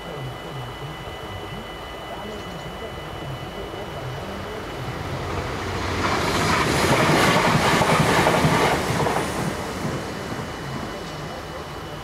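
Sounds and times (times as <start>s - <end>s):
train wheel and rail noise: 0.0s - 12.0s.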